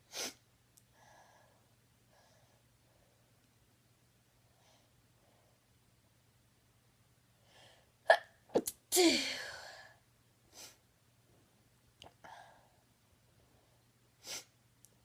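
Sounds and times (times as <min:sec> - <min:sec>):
woman sneezing: 0:08.1 - 0:09.7.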